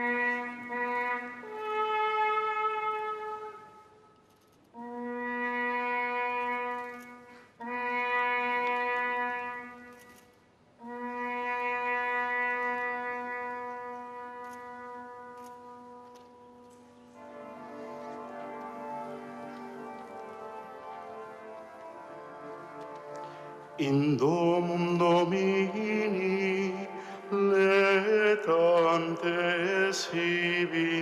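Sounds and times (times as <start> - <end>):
shofar blasts: 0.0 - 4.0, 4.8 - 10.0.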